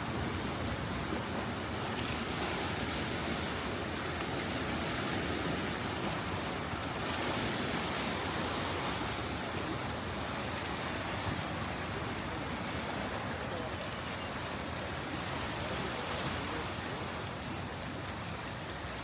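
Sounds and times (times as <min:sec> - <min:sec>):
sea surf washing on shore: 0:00.0 - 0:19.0.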